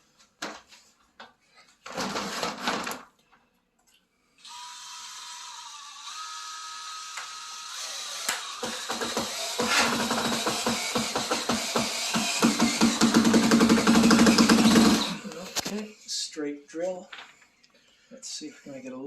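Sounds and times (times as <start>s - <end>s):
cordless drill running: 4.4s - 15.6s.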